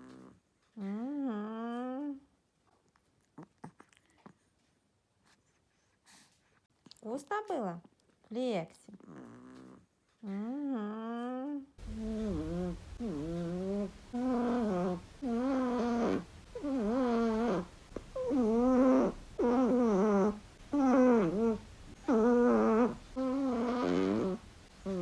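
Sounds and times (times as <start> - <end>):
dog snoring: 0.0 - 2.2, 8.9 - 25.0.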